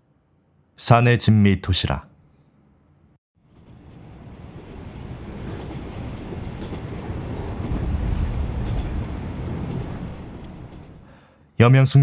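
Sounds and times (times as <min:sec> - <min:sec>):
train running on rails: 0:03.4 - 0:11.2.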